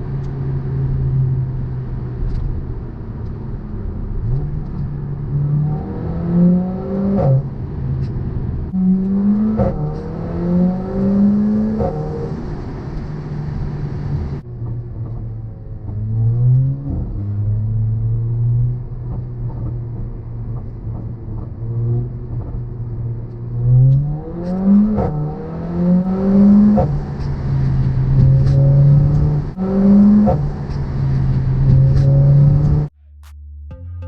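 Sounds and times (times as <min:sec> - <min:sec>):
car engine revving through shifts: 0:00.0 - 0:32.9
exhaust cracks: 0:06.7 - 0:33.3.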